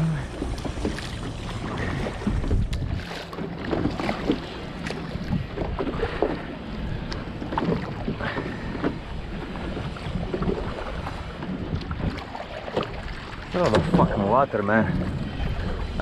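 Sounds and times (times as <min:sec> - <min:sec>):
wind on microphone: 0:00.0 - 0:03.2, 0:14.8 - 0:16.0
water around boat: 0:00.0 - 0:16.0.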